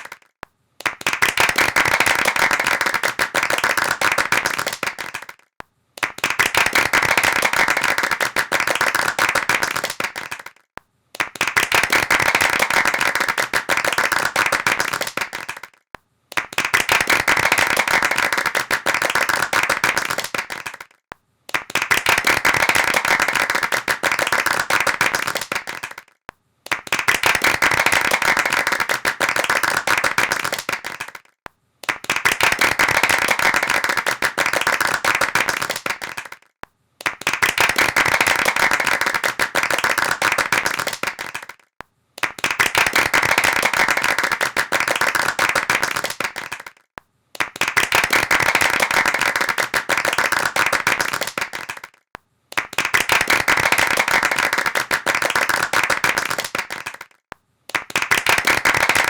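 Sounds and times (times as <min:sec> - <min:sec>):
hands clapping rapidly: 0:00.0 - 0:59.0.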